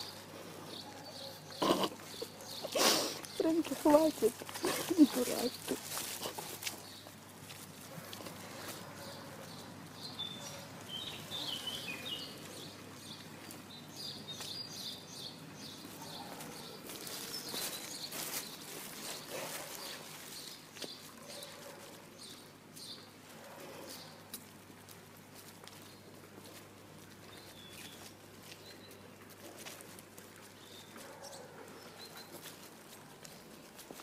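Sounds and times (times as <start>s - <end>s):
small birds chirping: 0.0s - 24.4s, 25.1s - 34.0s
faint steady background noise: 0.0s - 34.0s.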